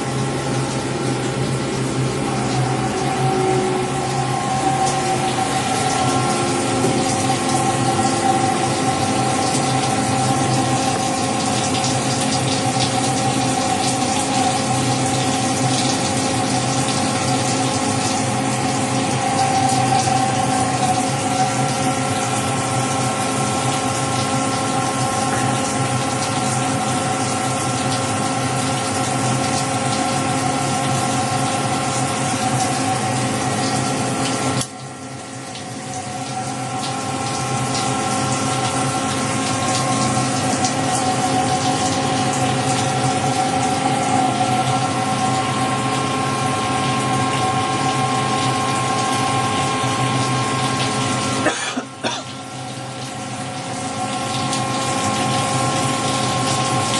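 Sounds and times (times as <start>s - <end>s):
rushing watery noise: 0.0s - 34.5s
lathe machine hum with tones: 0.0s - 56.9s.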